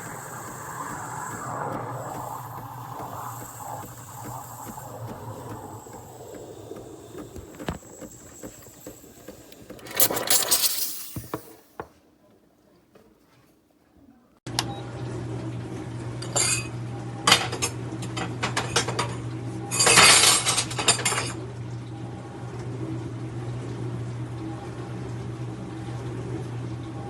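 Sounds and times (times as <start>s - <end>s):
espresso machine humming: 0.0s - 10.3s
loud burst of noise: 0.0s - 11.2s.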